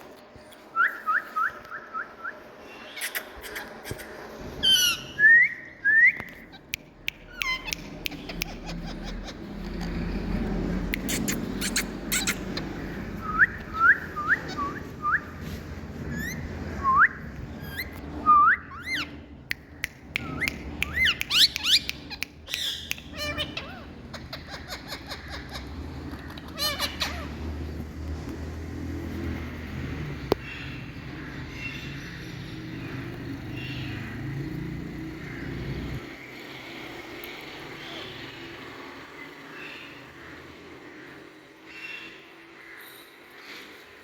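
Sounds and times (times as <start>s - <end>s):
parakeet calling: 2.7s - 5.4s, 6.1s - 19.3s, 20.2s - 27.8s.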